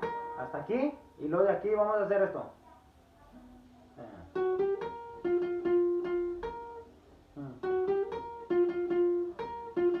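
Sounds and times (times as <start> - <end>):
guitar picking circus riff: 0.0 - 1.2, 4.2 - 10.0.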